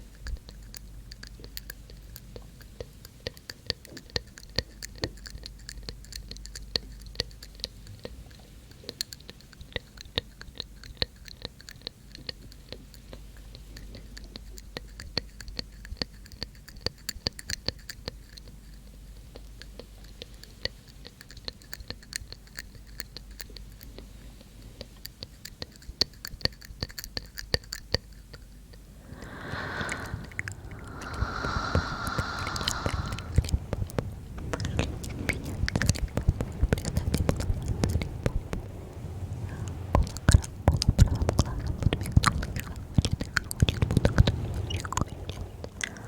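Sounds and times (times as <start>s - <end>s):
wet tongue and lip clicks: 0.0s - 46.0s
breathy whispering: 28.7s - 35.0s, 44.8s - 46.0s.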